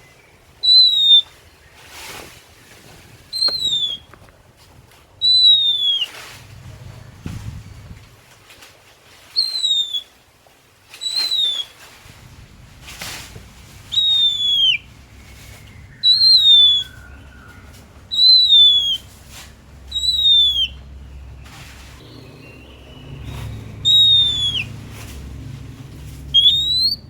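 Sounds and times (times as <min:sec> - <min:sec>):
bird whistling song: 0:00.0 - 0:01.8, 0:03.3 - 0:04.1, 0:05.2 - 0:06.2, 0:09.3 - 0:10.2, 0:11.0 - 0:11.8, 0:13.9 - 0:19.2, 0:19.8 - 0:25.0, 0:26.2 - 0:27.0.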